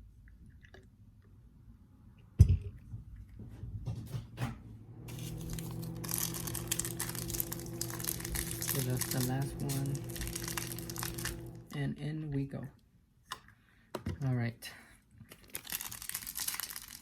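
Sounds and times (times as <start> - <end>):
water pouring into a cup: 5.1 - 11.7.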